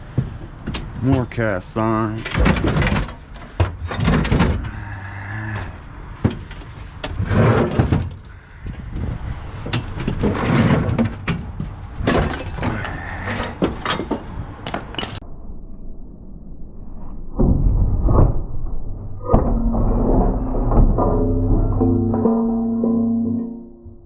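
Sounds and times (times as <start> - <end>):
scrap metal clanking: 6.3 - 8.3, 9.6 - 14.2, 19.3 - 23.8.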